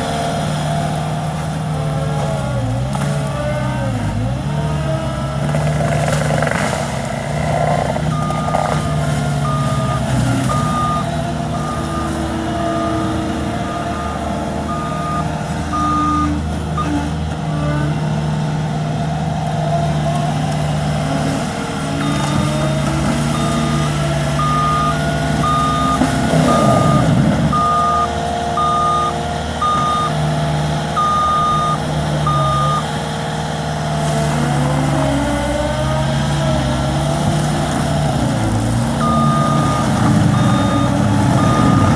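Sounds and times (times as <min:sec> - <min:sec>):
diesel engine running: 0:00.0 - 0:41.9
backup alarm beeping: 0:08.1 - 0:16.9, 0:22.0 - 0:30.2, 0:31.0 - 0:32.9, 0:39.0 - 0:41.9.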